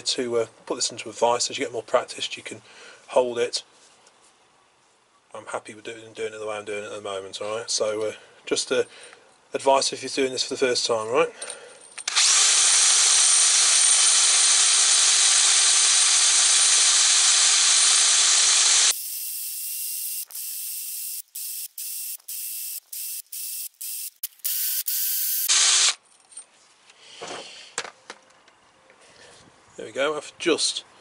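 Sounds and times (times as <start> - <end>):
drill spinning wire brush on metal: 12.1 - 26.0.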